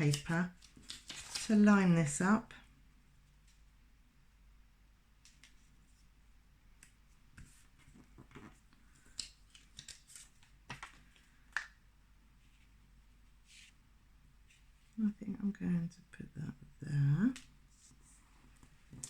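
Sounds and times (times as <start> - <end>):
paper rustling: 0.0 - 1.7, 7.4 - 11.2, 17.8 - 19.0.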